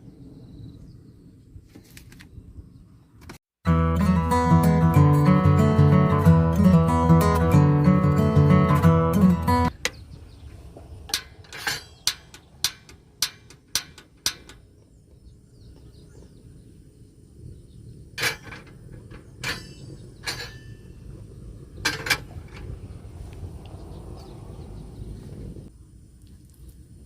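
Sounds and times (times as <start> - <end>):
low rumble: 14.6 - 25.8.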